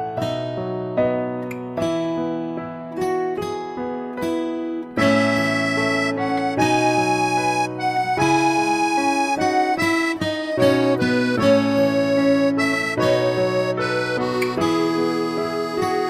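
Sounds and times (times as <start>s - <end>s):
instrumental background music: 4.7s - 16.0s.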